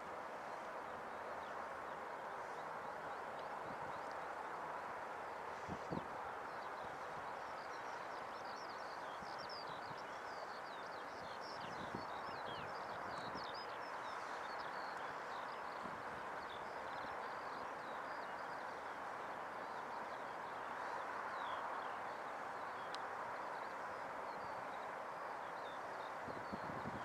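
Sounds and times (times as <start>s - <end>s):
small songbirds chirping: 5.9s - 27.0s.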